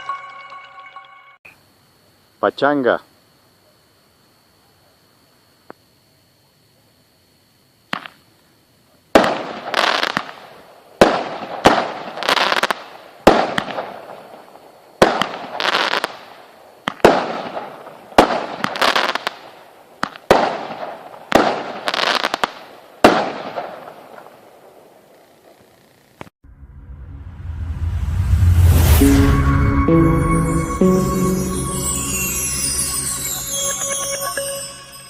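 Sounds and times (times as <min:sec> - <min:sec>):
fireworks bangs: 0:09.1 - 0:10.4, 0:11.0 - 0:19.4, 0:20.0 - 0:24.3
fireworks crackle: 0:09.2 - 0:26.3, 0:30.3 - 0:35.0.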